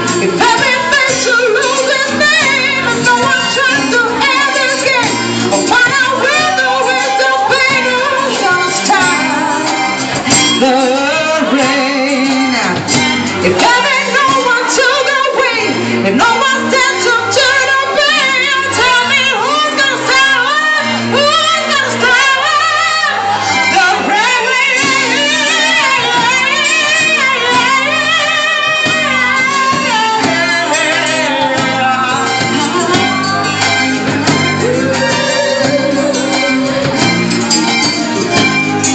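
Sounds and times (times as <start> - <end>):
band accompaniment: 0.0 - 38.9
woman singing: 0.0 - 38.9.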